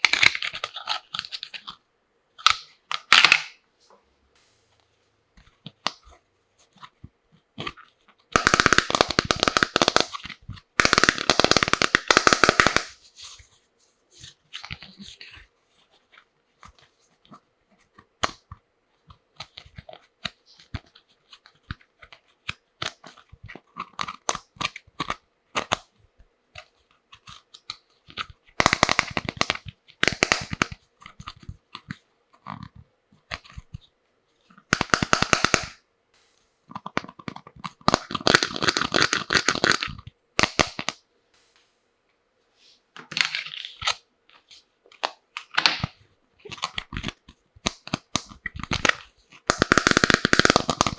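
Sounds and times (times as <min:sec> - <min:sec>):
plastic toy pieces clicking: 0:08.4 - 0:13.0, 0:28.6 - 0:30.8, 0:34.7 - 0:35.8, 0:37.8 - 0:41.0, 0:46.5 - 0:50.9.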